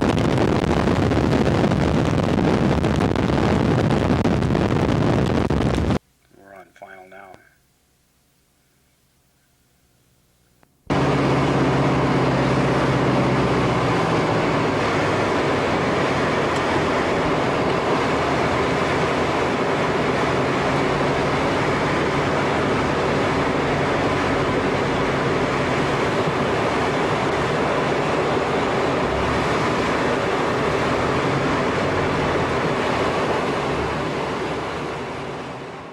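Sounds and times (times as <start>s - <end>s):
low hum: 0.0s - 6.5s, 7.3s - 35.9s
light aircraft engine droning: 10.9s - 35.9s.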